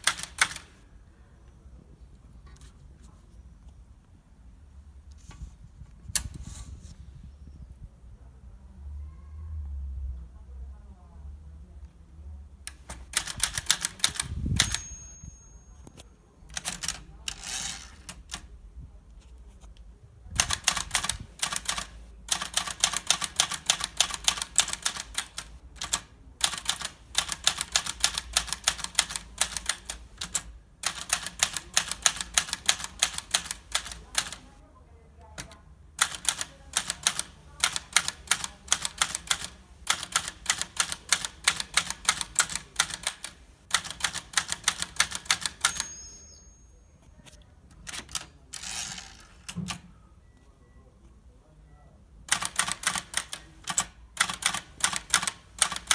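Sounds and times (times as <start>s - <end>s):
typewriter key strikes: 12.7s - 15.2s.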